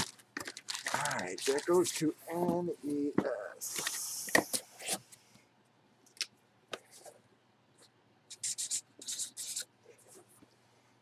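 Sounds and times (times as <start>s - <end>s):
plastic packaging clicks: 0.0s - 1.7s
plastic packaging rustling: 0.0s - 2.6s.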